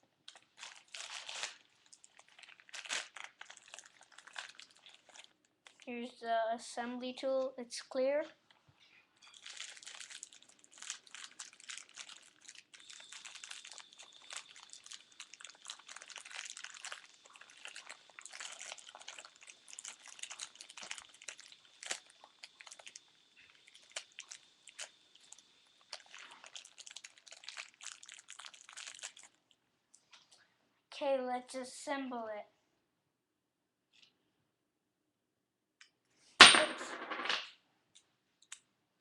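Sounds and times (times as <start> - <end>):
plastic packaging crinkling: 0.2 - 6.2, 9.2 - 30.2.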